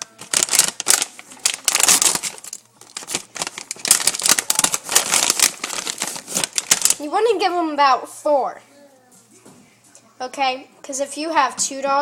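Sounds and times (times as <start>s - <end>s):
plastic bag crinkling: 0.0s - 7.5s.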